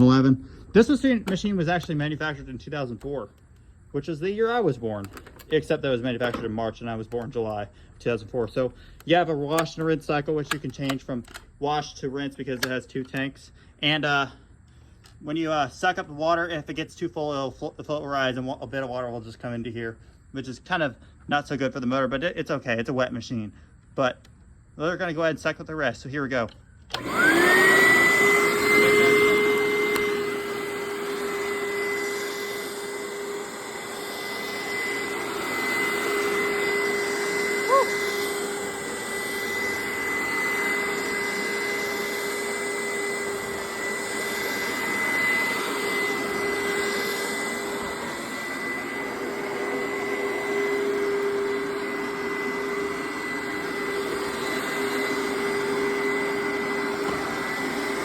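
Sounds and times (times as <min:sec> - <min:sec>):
carpet cleaner suction motor whine: 0:26.9 - 0:58.0.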